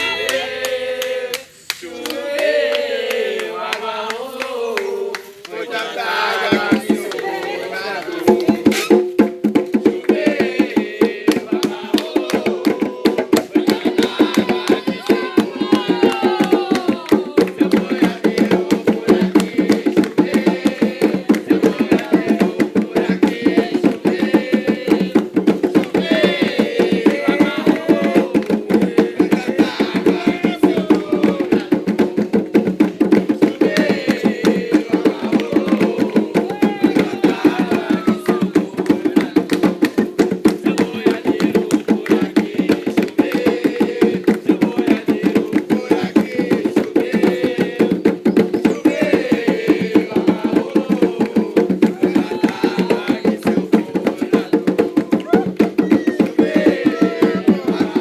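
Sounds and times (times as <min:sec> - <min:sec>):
voices calling out: 0:00.0 - 0:09.0, 0:33.6 - 0:39.4, 0:55.0 - 0:58.0
hand drumming: 0:06.4 - 0:58.0.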